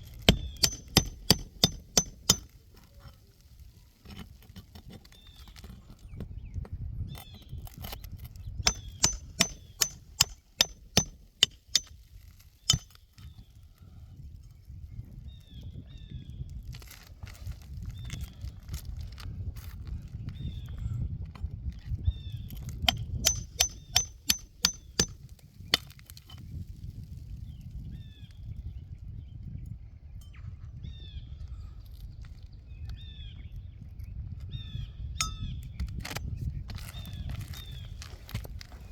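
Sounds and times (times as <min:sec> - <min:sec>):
low wind rumble: 0:00.0 - 0:38.9
hammer striking metal: 0:00.3 - 0:02.5, 0:08.7 - 0:11.9, 0:12.7 - 0:12.9, 0:22.9 - 0:25.2.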